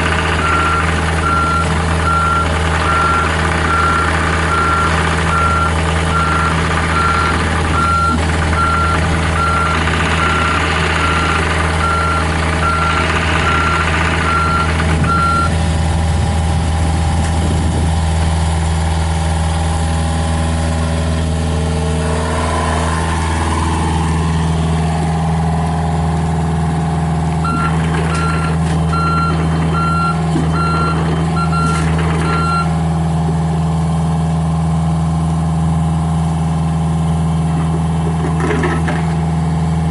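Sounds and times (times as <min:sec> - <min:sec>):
diesel engine running: 0:00.0 - 0:39.9
reversing alarm beeping: 0:00.4 - 0:15.6, 0:27.4 - 0:32.8.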